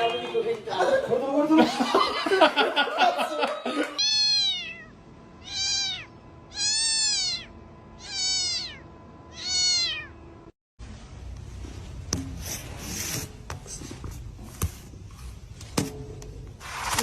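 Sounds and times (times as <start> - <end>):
cat meowing: 4.0 - 10.2.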